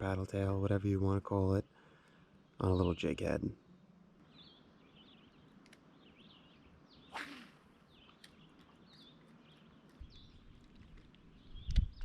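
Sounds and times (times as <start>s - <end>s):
faint birdsong: 0.0s - 12.0s
fishing rod whoosh: 7.1s - 7.7s.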